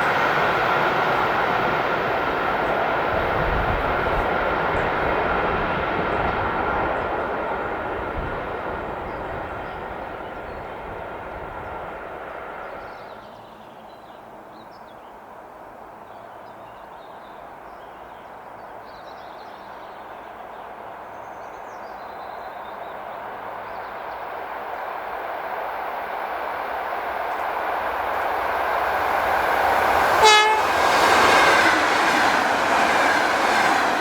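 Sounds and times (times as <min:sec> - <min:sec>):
passing train whistling tone: 0:00.0 - 0:11.6, 0:24.1 - 0:34.0
train rumble: 0:00.0 - 0:13.4, 0:19.7 - 0:34.0.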